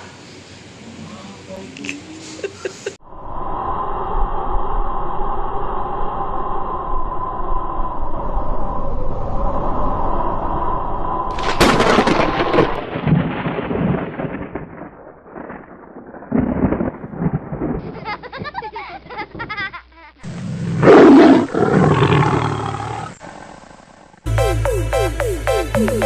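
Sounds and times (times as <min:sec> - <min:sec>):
loud rumbling crash: 0:11.2 - 0:18.3.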